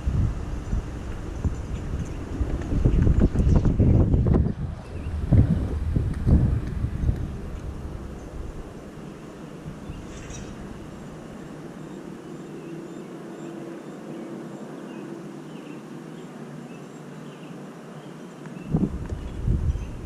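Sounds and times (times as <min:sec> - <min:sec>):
gusty wind rushing: 0:00.0 - 0:12.2, 0:18.7 - 0:20.0
wind buffeting microphone: 0:00.0 - 0:12.6, 0:18.6 - 0:20.0.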